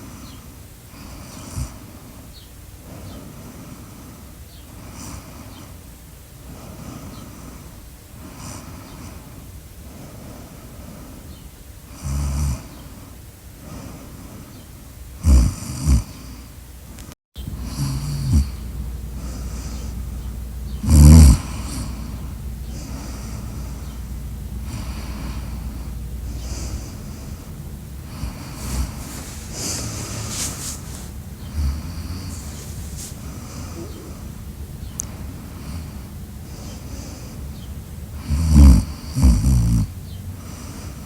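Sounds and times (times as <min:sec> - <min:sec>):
person snoring: 0:12.0 - 0:12.6, 0:15.2 - 0:16.2, 0:17.5 - 0:20.0, 0:20.8 - 0:34.4, 0:38.2 - 0:39.9.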